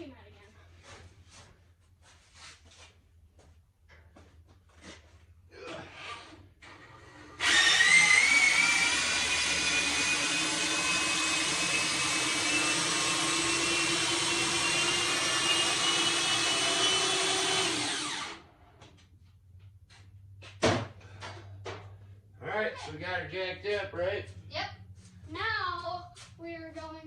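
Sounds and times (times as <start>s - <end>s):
electric jack motor whine: 7.4s - 18.5s.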